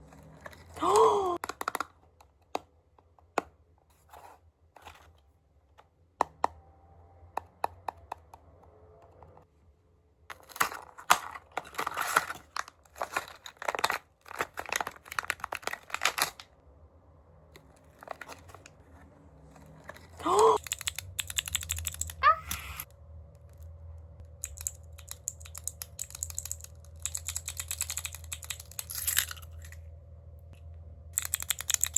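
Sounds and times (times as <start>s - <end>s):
keyswitch clicks: 20.6s - 22.8s.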